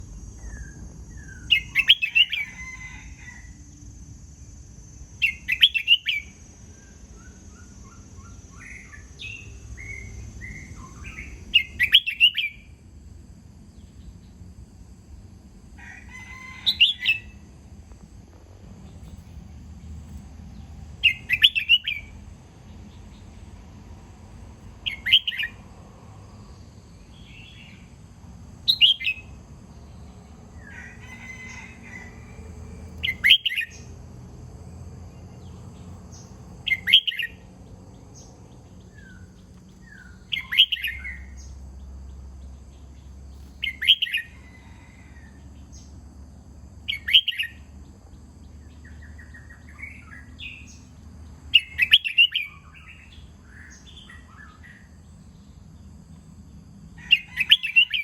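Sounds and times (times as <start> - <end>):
bird singing song phrases: 0.1 - 3.0, 5.1 - 12.7, 20.5 - 23.4, 24.7 - 25.6, 28.7 - 30.3, 33.0 - 33.9, 35.3 - 44.9, 46.8 - 55.6, 57.0 - 58.0.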